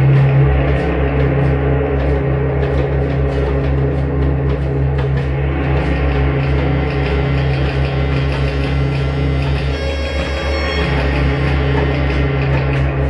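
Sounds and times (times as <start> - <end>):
live band playing: 8.7 - 13.0.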